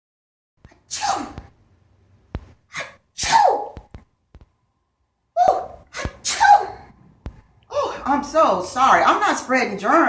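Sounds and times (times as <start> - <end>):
person sneezing: 0.8 - 1.5, 2.7 - 3.8, 5.4 - 6.9.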